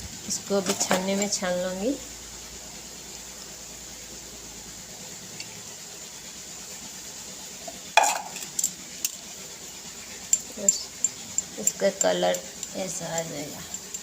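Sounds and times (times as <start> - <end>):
faint steady hiss: 0.0 - 14.0
sharp metallic clank: 8.0 - 8.7
light metal clinks: 10.2 - 14.0.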